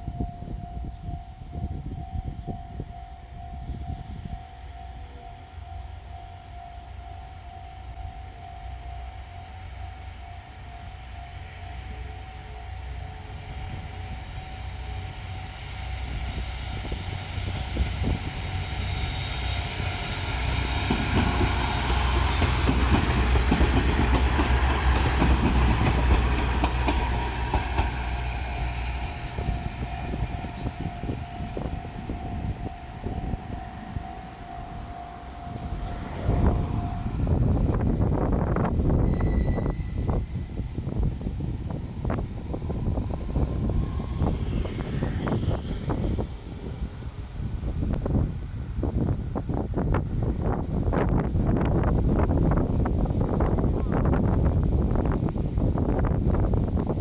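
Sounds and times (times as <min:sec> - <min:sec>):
level crossing warning bell ringing: 0:00.0 - 0:15.5, 0:18.8 - 0:40.6
train engine rumble: 0:00.0 - 0:57.0
train wheels clicking: 0:14.2 - 0:46.9.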